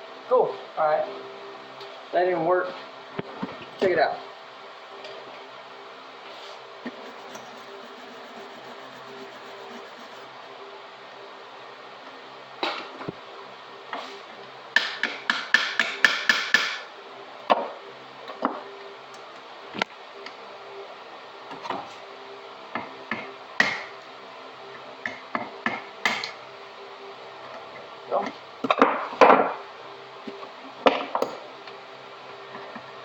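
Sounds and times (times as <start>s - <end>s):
hammer striking metal: 14.8s - 16.9s.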